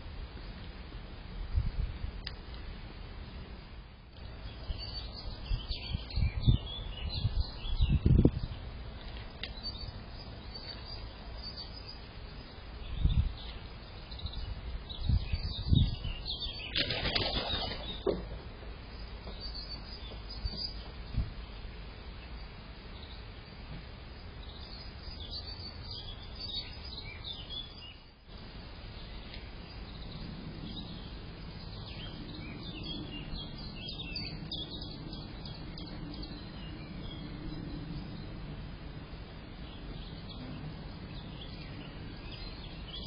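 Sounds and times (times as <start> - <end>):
small birds chirping: 4.1 - 43.0
wings flapping: 16.7 - 18.3.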